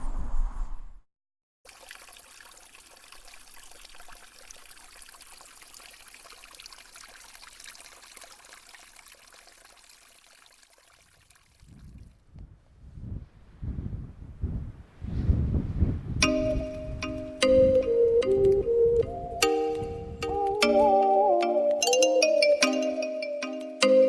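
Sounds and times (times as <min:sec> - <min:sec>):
water trickling: 0:01.7 - 0:12.2.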